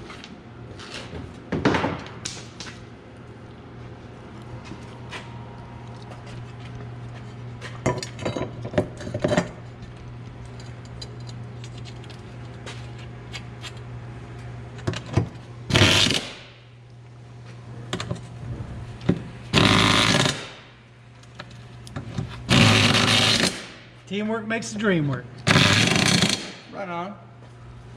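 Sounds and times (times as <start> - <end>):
steady low hum: 0.0 - 27.9
impact wrench rattling: 25.4 - 26.6.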